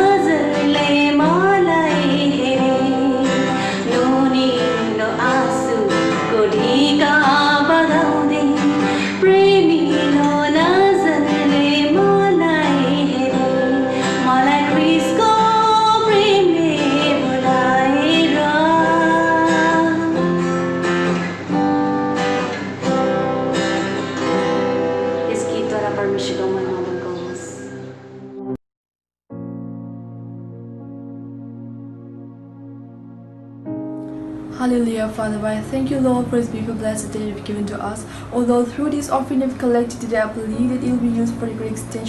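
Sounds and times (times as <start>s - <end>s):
woman singing: 0.0s - 20.3s, 25.3s - 27.7s, 34.6s - 42.0s
strummed acoustic guitar: 0.0s - 28.2s.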